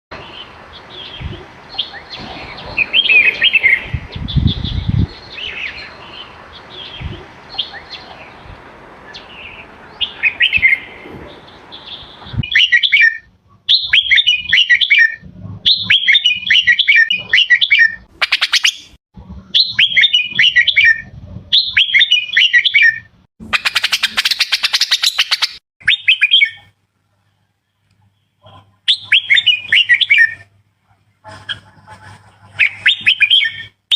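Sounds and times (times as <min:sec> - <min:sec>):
bird chirpy song: 0:00.1 - 0:30.5, 0:31.1 - 0:33.9
bird harsh rattling calls: 0:23.5 - 0:26.2.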